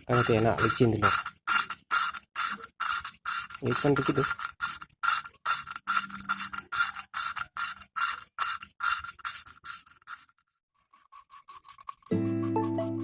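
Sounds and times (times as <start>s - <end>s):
gritty scraping of valve lapping: 0.0s - 13.0s.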